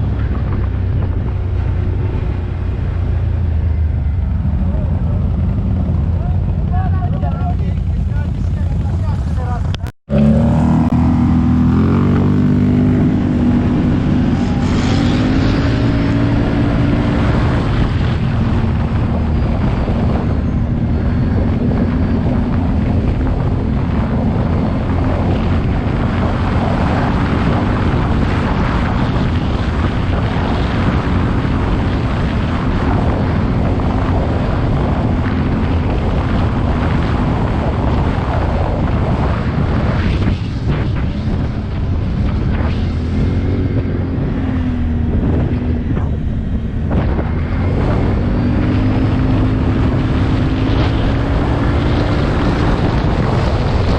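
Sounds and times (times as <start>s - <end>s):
atv engine accelerating: 0.0s - 53.9s
wind noise: 0.0s - 53.9s.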